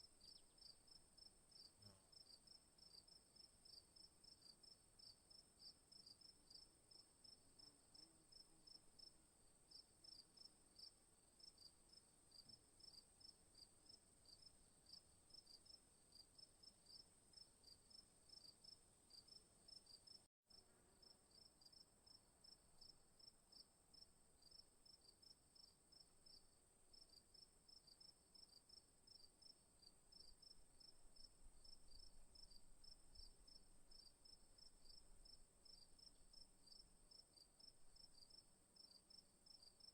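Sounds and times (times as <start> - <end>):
crickets trilling and chirping: 25.6 - 39.9.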